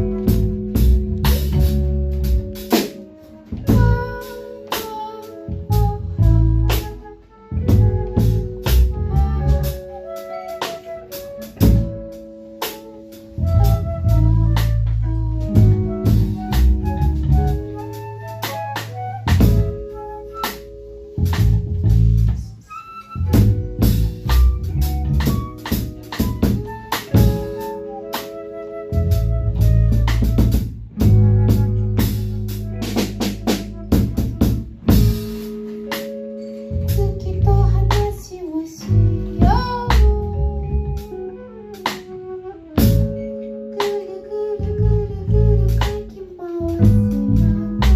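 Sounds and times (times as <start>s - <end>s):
drum kit hits: 0.0s - 5.1s, 23.3s - 28.3s, 29.9s - 38.1s
drum kit strikes and rimshots: 0.0s - 44.2s, 44.8s - 47.9s
held low bass notes: 0.0s - 47.9s
sustained melodic notes: 34.8s - 37.9s.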